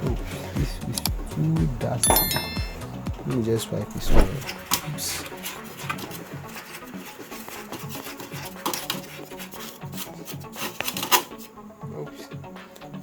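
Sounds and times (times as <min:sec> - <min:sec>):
dry rubbing and scraping: 0:03.9 - 0:11.6.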